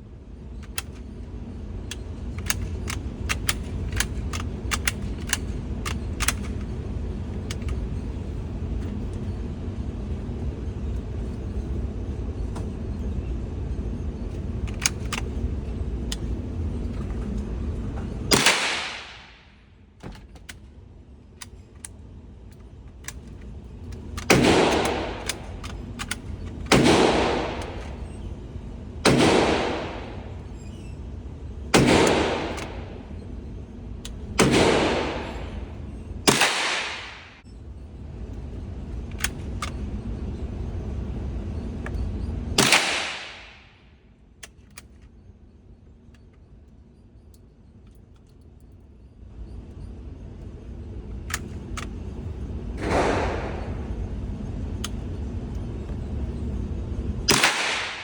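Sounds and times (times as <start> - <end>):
scattered clicks: 0.6 - 1.1, 1.8 - 6.8, 7.4 - 7.9, 14.3 - 17.5, 21.4 - 28.3, 38.3 - 39.9, 51.1 - 56.6
rifle shots cracking: 18.3 - 19.3, 24.2 - 25.7, 26.7 - 28.0, 29.0 - 30.4, 31.7 - 33.0, 34.4 - 35.6, 36.3 - 37.4, 42.6 - 43.6, 52.8 - 54.0, 57.3 - 58.0
low rumble: 51.3 - 57.4.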